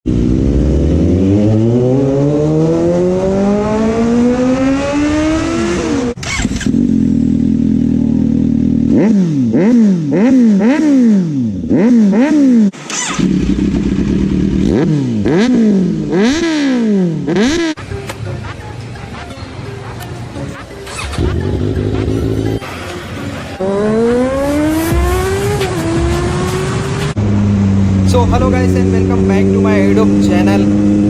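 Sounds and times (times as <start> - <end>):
superbike engine accelerating: 0.1 - 17.8, 20.4 - 31.0
motorcycle engine idling: 6.6 - 8.9, 13.2 - 15.4
engine throttle blips: 11.8 - 31.0.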